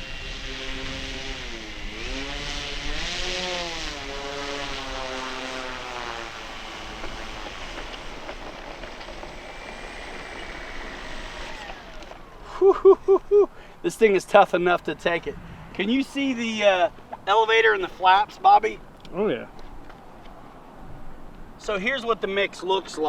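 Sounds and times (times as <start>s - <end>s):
wind noise on microphone: 0.0s - 12.0s, 15.0s - 15.8s, 20.7s - 21.6s
electric motor and propeller whine: 0.0s - 12.6s.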